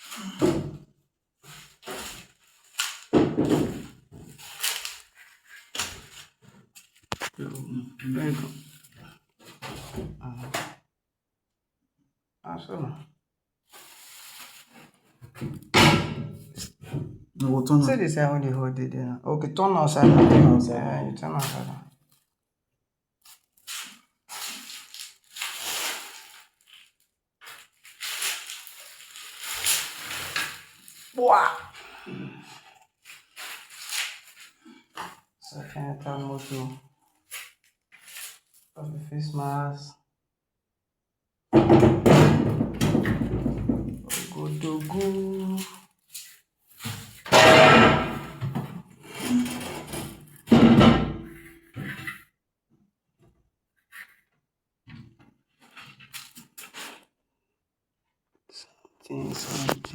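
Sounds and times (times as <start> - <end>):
crunching scraping on plumbing: 1.4 - 10.0, 23.2 - 31.2, 32.4 - 35.2.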